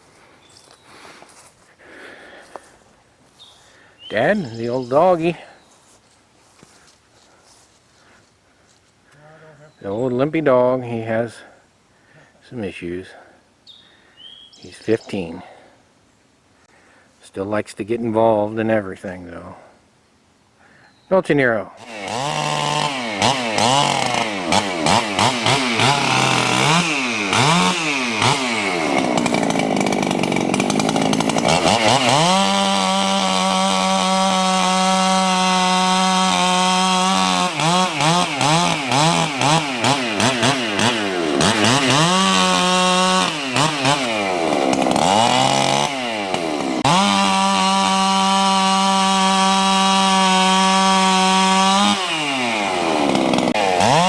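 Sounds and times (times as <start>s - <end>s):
chainsaw revving: 21.8s - 54.0s.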